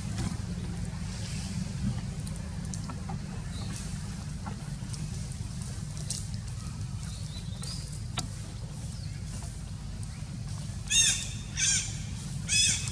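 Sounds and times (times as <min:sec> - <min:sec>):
low rumble: 0:00.0 - 0:12.9
high-pitched animal calls: 0:10.9 - 0:12.9.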